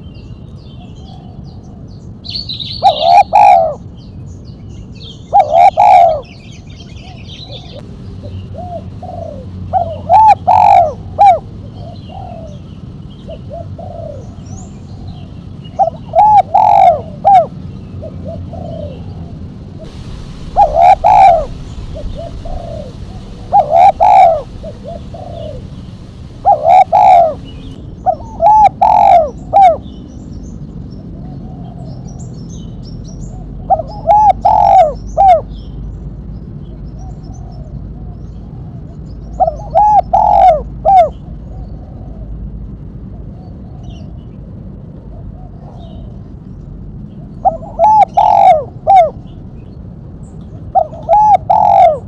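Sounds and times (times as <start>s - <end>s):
dove cooing: 2.8s - 3.8s, 5.3s - 6.3s, 8.6s - 12.6s, 15.8s - 19.2s, 19.8s - 29.8s, 33.7s - 35.4s, 39.4s - 41.2s, 47.4s - 49.2s, 50.8s - 52.0s.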